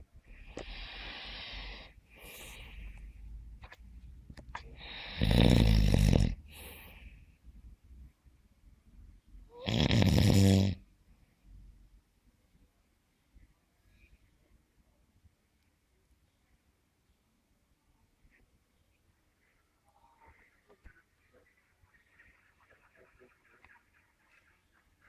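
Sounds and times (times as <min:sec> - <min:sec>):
soft hissing breaths: 0:00.0 - 0:07.7
deep snores: 0:04.8 - 0:06.8, 0:09.6 - 0:10.8.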